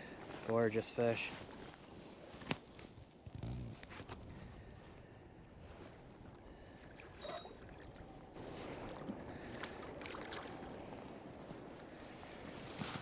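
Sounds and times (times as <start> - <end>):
water lapping against kayak hull: 6.5 - 12.8.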